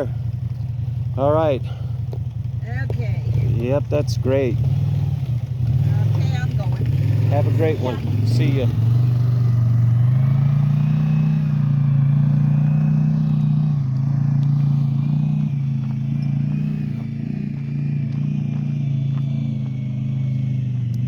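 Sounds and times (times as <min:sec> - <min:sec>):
engine running: 0:00.0 - 0:21.0.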